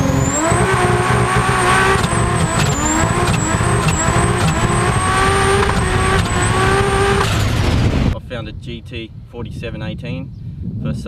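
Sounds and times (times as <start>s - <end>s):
engine revving hard: 0.0s - 8.2s.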